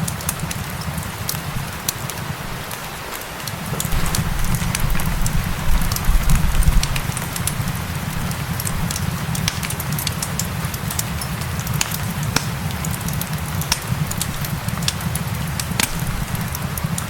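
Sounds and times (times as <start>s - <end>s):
rain hissing: 0.0s - 17.0s
wood fire crackling: 0.0s - 17.0s
low rumble: 3.9s - 8.9s.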